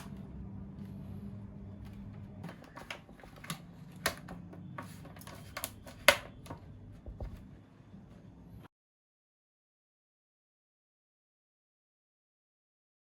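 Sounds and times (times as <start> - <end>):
laptop panel clicks and knocks: 2.5 - 7.4.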